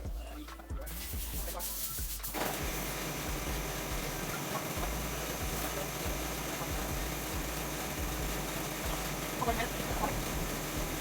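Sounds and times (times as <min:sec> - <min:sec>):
engine-driven pump running: 0:02.3 - 0:11.0.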